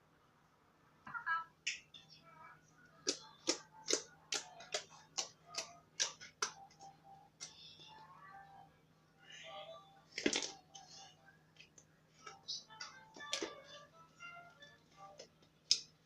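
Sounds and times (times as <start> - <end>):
background music with clicking beat: 3.0 - 7.8, 11.6 - 16.0.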